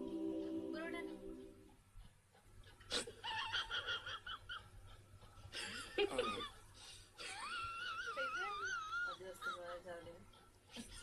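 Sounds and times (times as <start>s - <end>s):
high-pitched snickering laughter: 2.9s - 6.6s, 7.2s - 9.8s.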